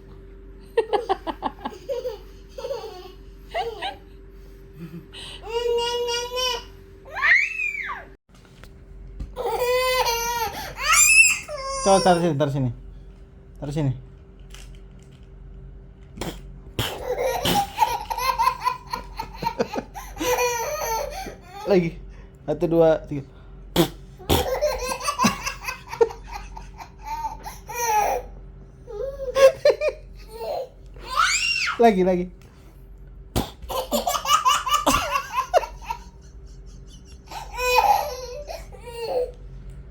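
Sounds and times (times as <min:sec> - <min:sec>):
young child laughing: 0:00.8 - 0:04.1, 0:16.8 - 0:21.7, 0:24.2 - 0:28.3, 0:29.0 - 0:31.4, 0:33.7 - 0:39.3.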